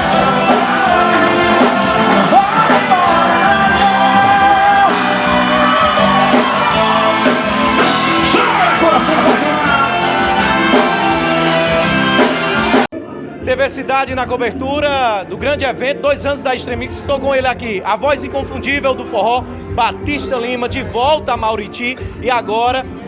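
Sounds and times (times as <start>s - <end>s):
person singing long sliding notes: 0.0s - 12.8s
live band playing: 0.0s - 23.0s.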